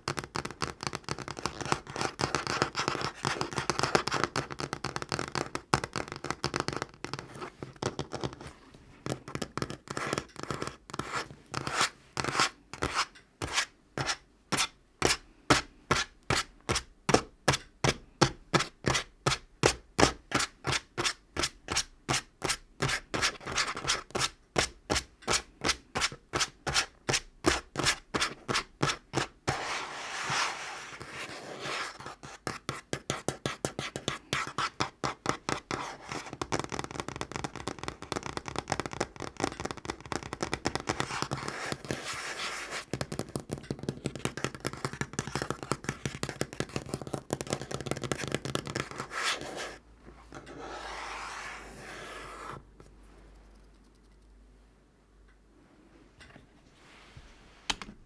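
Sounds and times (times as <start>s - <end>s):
nails scratching across surface: 29.5s - 32.6s.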